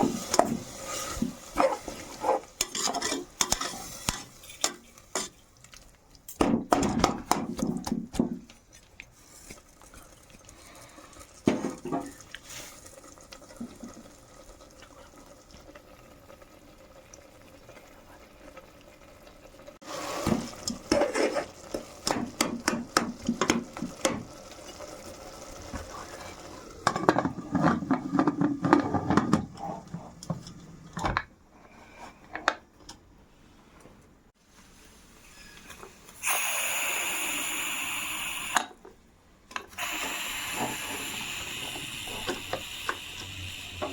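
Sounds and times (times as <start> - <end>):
spoon scraping and knocking a pot: 0.0 - 5.3.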